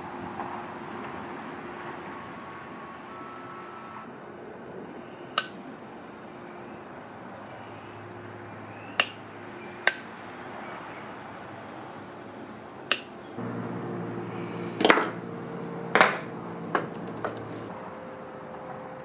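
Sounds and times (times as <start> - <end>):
steady electric hum: 0.0 - 19.0.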